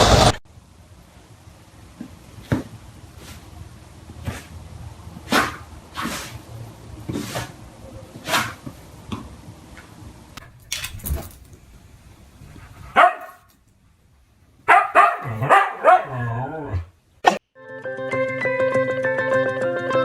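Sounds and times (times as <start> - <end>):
dog barking: 12.9 - 13.5, 14.6 - 16.4.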